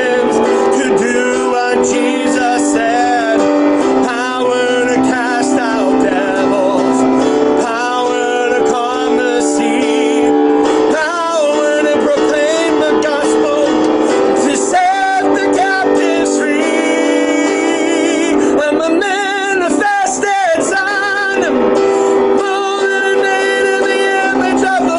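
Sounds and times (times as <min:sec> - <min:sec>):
instrumental accompaniment: 0:00.0 - 0:24.9
man singing: 0:00.0 - 0:24.9.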